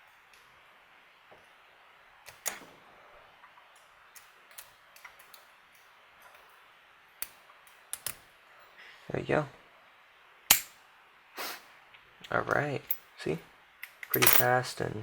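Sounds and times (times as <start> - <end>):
lock pick clicking and scraping: 7.2 - 8.2.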